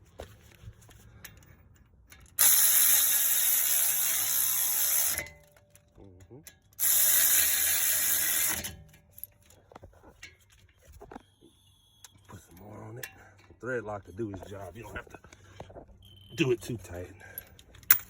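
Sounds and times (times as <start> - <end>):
cordless power tool spinning bolts: 2.2 - 5.6, 6.8 - 8.9.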